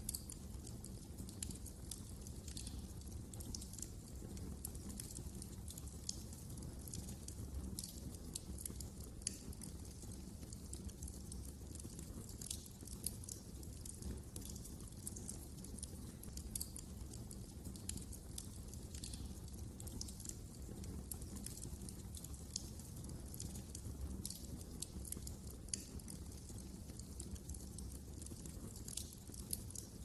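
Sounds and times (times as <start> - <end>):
low rumble of burning fire: 0.0 - 30.0
wood fire crackling: 0.0 - 30.0.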